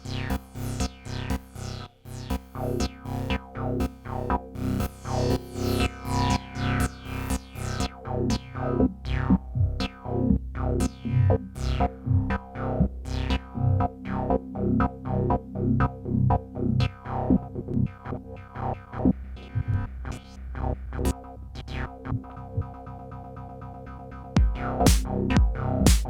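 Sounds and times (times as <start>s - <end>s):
drum machine beat: 24.4s - 26.0s
synthesizer rhythmic pattern: 24.4s - 26.0s.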